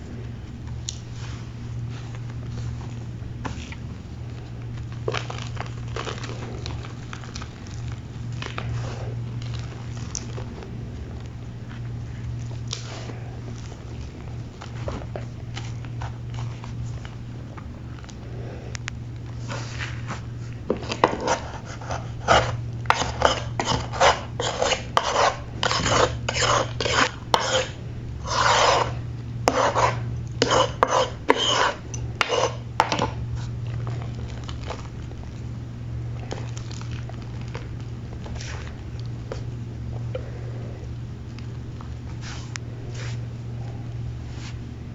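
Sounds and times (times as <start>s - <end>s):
chalk crunching and scraping: 0.9s - 17.2s, 19.3s - 34.9s, 36.2s - 39.5s, 42.0s - 44.7s.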